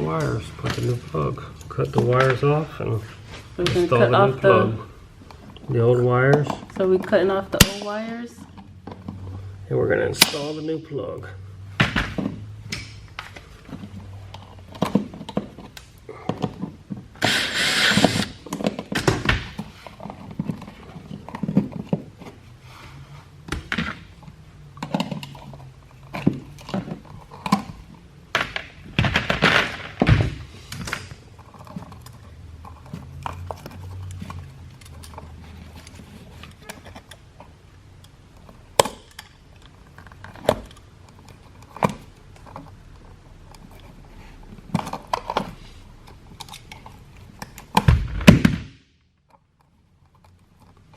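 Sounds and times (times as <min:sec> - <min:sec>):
tool rasping: 0:17.2 - 0:18.4.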